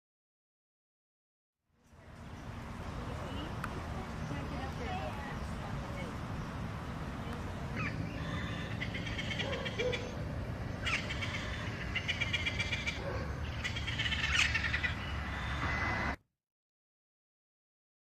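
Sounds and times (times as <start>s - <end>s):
parrots chattering: 7.7s - 10.2s, 10.8s - 15.6s.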